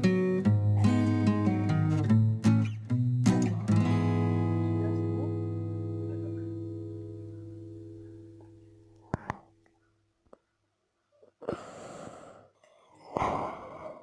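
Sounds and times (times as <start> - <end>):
guitar chord: 0.0 - 8.8
breathy hissing bursts: 11.4 - 14.0.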